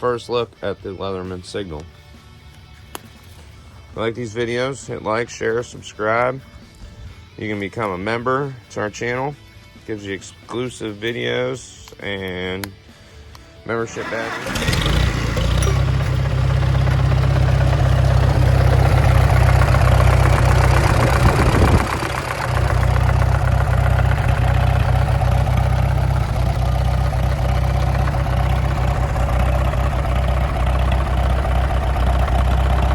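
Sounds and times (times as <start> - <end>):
engine idling: 13.9 - 32.9.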